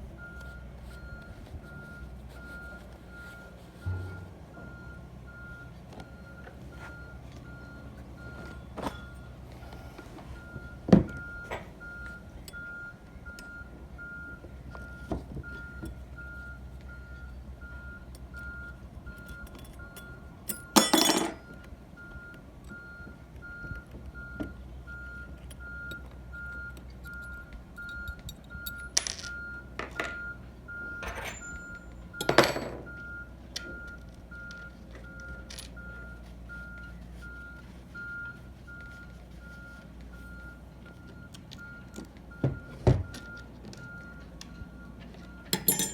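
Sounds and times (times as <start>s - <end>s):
reversing beeper: 0.2s - 20.1s
sharp knocks and clunks: 3.9s - 4.8s.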